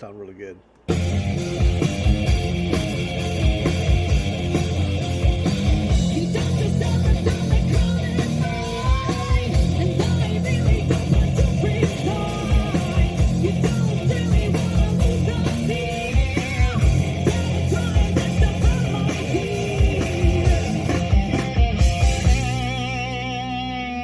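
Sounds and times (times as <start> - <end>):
hard-hitting drums: 0.9 - 23.6
bass guitar: 0.9 - 24.0
distorted electric guitar: 0.9 - 24.0
person singing: 6.0 - 21.4.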